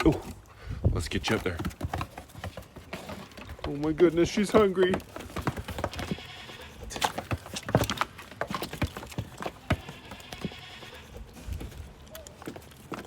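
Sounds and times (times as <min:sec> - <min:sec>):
hooves clattering on wood: 0:00.0 - 0:13.0
faint goat bleats: 0:06.0 - 0:07.2, 0:09.6 - 0:11.3.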